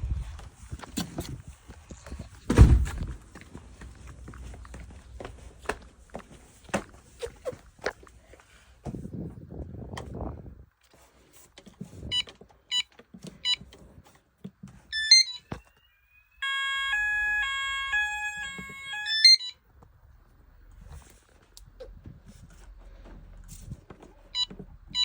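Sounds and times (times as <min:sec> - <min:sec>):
electronic alarm beeps: 0:14.9 - 0:19.6, 0:24.4 - 0:25.0
loud multi-pitch warning tone: 0:15.0 - 0:19.6.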